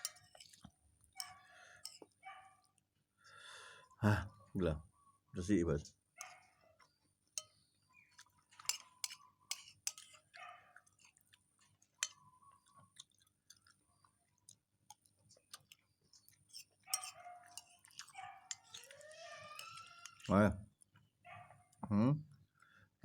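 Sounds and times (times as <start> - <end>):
person chewing: 0.0 - 2.2, 8.0 - 20.3.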